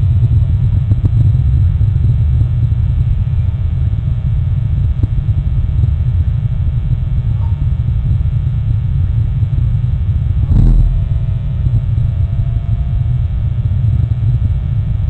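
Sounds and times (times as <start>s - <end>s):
steady low rumble: 0.0s - 15.0s.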